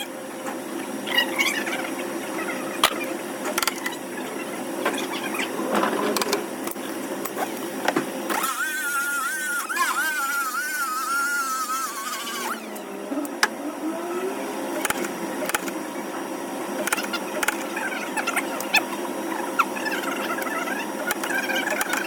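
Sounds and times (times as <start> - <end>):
high wavering squeal: 8.3 - 13.0.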